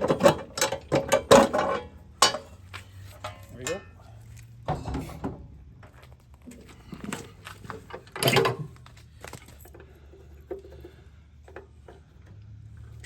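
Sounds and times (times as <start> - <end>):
metal tools clattering: 0.0 - 4.0.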